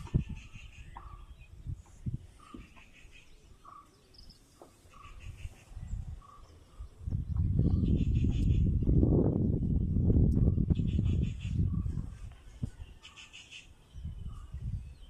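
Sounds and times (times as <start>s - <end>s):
bird calling: 0.0s - 7.0s.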